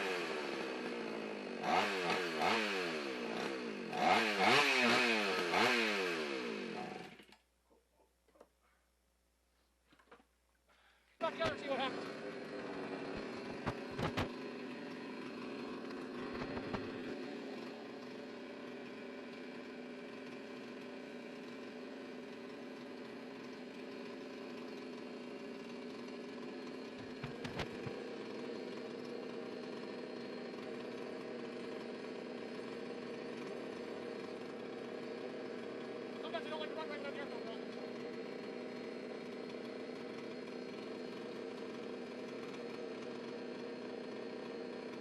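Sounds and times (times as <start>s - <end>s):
chainsaw engine idling: 0.0s - 7.4s, 9.8s - 45.0s.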